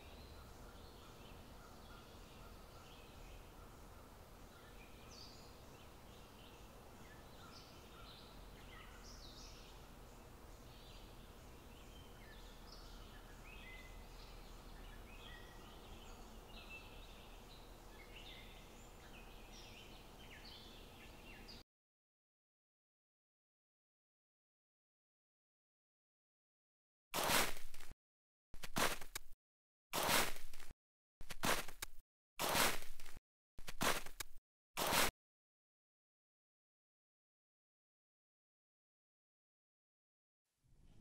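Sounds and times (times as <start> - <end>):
songbirds chirping and singing: 0.0 - 21.6.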